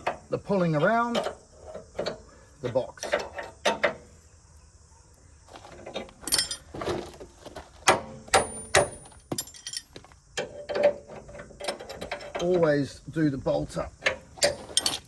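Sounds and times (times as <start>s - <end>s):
metal gear clanking and knocking: 5.6s - 7.2s, 7.8s - 12.7s, 14.0s - 15.0s.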